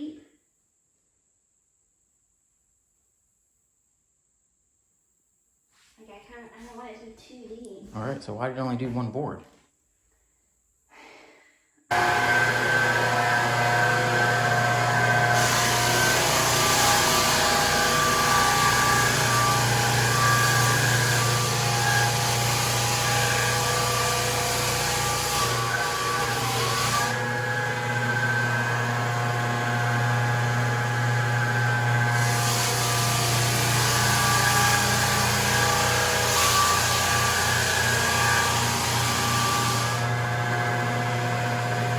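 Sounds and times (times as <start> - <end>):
floor sander motor hum: 11.9 - 41.9.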